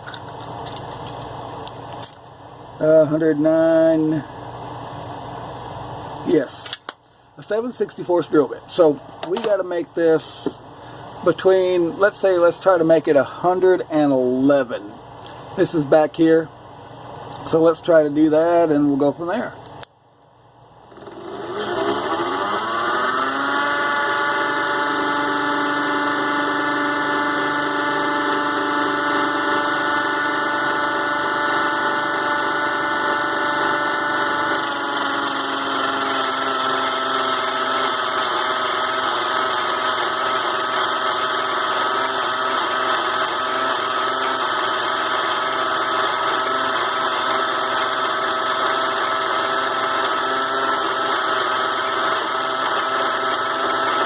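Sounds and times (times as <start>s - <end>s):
lathe motor whining: 20.9s - 54.0s.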